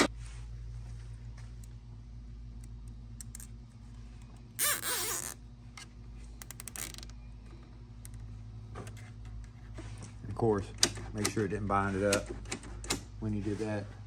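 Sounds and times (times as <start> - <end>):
steady low hum: 0.0 - 14.0
short creak: 4.6 - 7.2.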